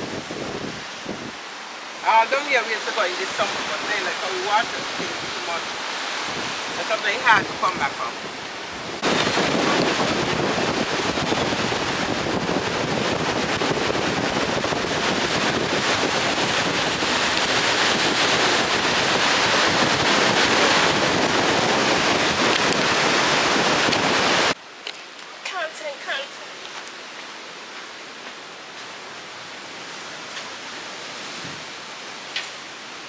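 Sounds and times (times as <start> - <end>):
wind buffeting microphone: 0.0 - 1.5, 3.1 - 24.6
ocean surf breaking: 0.0 - 24.6.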